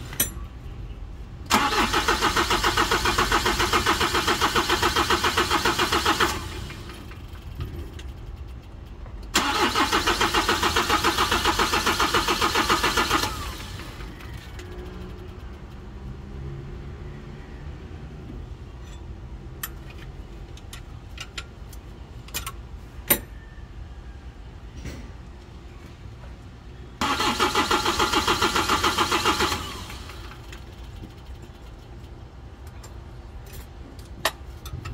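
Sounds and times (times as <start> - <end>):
diesel engine cranking on starter: 1.4 - 8.4, 9.2 - 15.9, 27.0 - 32.1.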